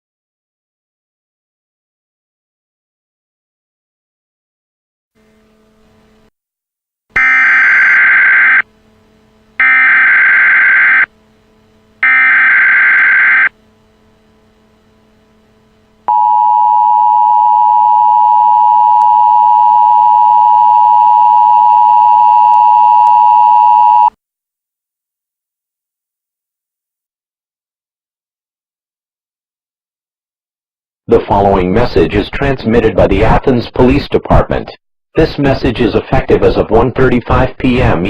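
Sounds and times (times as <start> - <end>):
two-tone attention signal: 7.2 - 8.7, 9.6 - 11.1, 12.0 - 13.5, 16.1 - 24.1.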